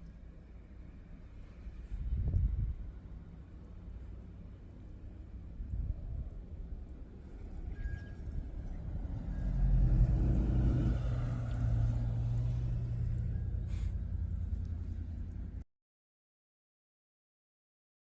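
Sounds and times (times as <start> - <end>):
road rumble: 0.0 - 15.6
car engine: 2.9 - 15.6.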